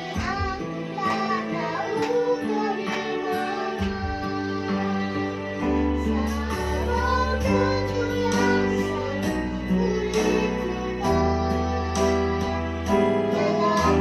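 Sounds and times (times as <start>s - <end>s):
person singing: 0.0s - 14.0s
plucked guitar: 0.0s - 14.0s
bass: 5.6s - 14.0s.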